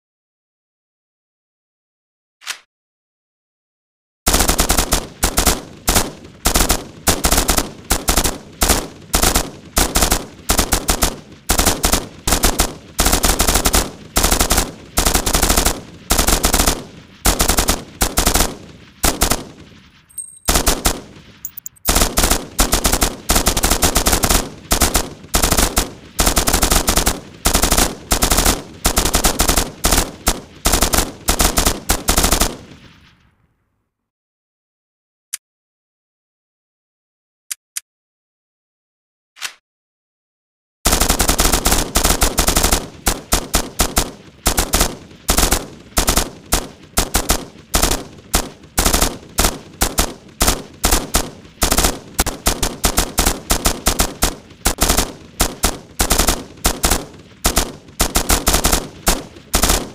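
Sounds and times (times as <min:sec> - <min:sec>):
machine gun bursts with echo: 0:04.3 - 0:33.2, 0:40.9 - 0:59.9.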